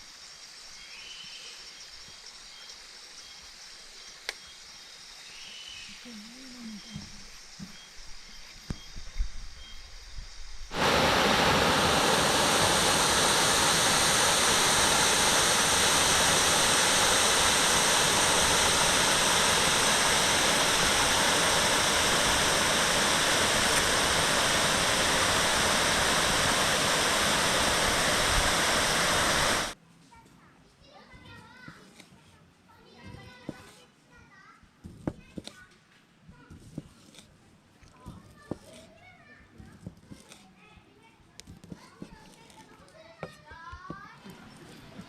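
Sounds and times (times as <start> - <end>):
rushing water: 10.7 - 29.8.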